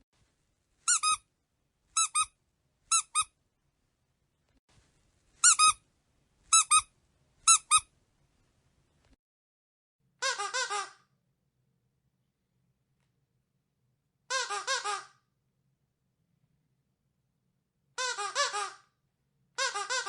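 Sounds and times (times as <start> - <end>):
squeaky dog toy squeaking: 0.9 - 1.2, 2.0 - 2.3, 2.9 - 3.3, 5.4 - 5.8, 6.5 - 6.9, 7.5 - 7.9, 10.2 - 11.0, 18.0 - 18.8, 19.6 - 20.0.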